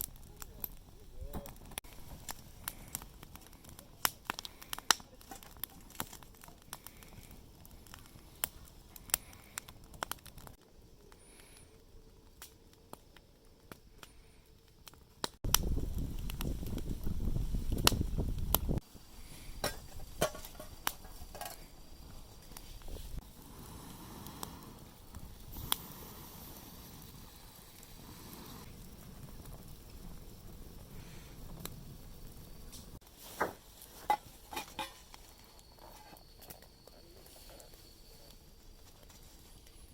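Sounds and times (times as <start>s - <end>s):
sharp pops and snaps: 0.0s - 11.7s, 12.3s - 18.8s, 22.4s - 26.1s
campfire crackling: 0.0s - 39.9s.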